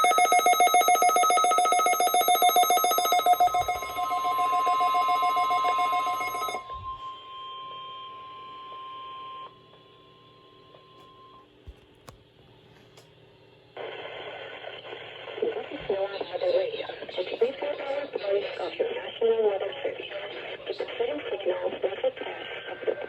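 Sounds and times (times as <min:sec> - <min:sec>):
pulsing electronic alarm: 0:00.0 - 0:11.4.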